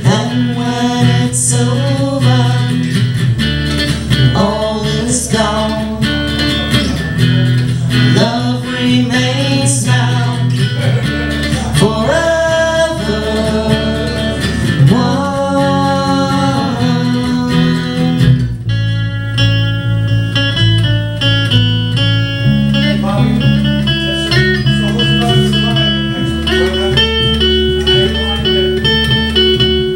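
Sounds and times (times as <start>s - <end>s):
person singing long notes: 0.0s - 3.1s, 4.1s - 18.5s
acoustic guitar: 0.0s - 29.9s
bass guitar: 0.0s - 29.9s.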